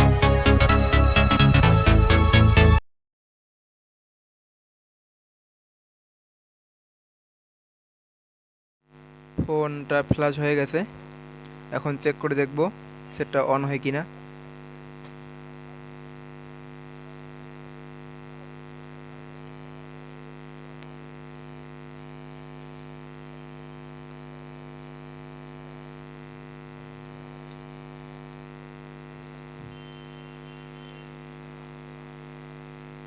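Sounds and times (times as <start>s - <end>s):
electrical mains hum: 9.0s - 33.0s.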